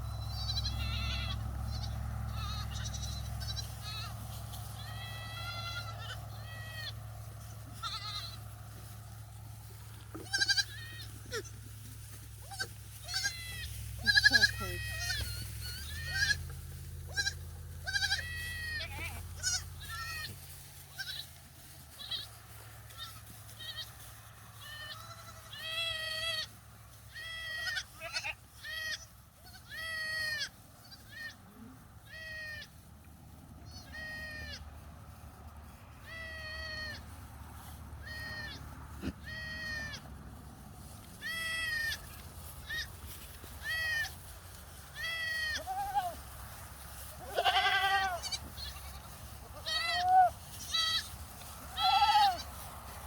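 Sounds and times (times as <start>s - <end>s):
goats bleating: 0.1s - 8.6s, 10.1s - 11.7s, 12.4s - 24.0s, 24.6s - 26.5s, 27.1s - 32.8s, 33.7s - 34.8s, 36.0s - 37.2s, 38.0s - 40.1s, 41.0s - 52.6s.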